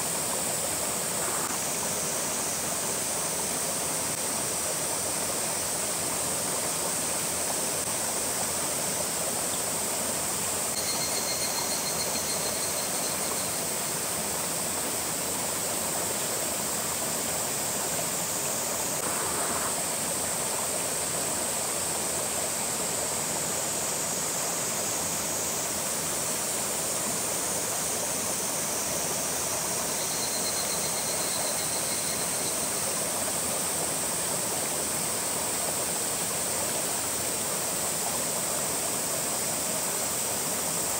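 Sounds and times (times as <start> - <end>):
flowing water rushing: 0.0 - 40.9
faint high trill: 10.7 - 13.6.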